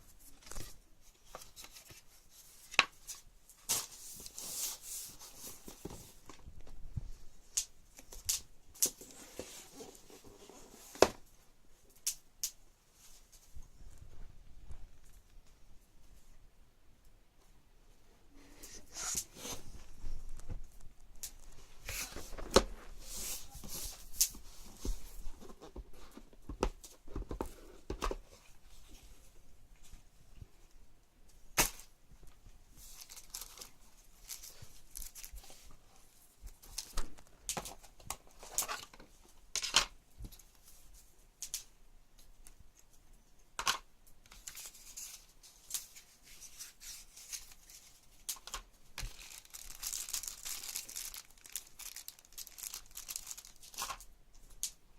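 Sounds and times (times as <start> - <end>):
packaging rustling and tearing: 32.9 - 35.6, 45.8 - 54.1.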